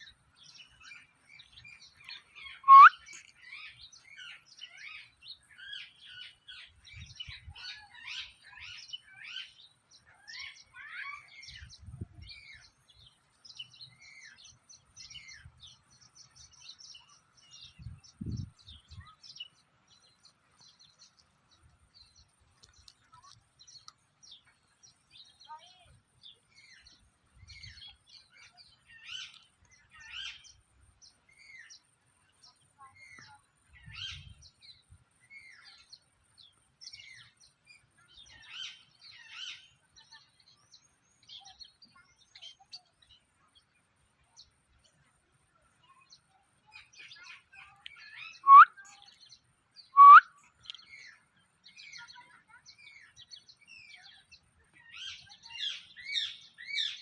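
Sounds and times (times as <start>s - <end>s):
loud sharp parakeet calls: 2.6s - 3.2s
parakeet chirping: 2.7s - 2.9s.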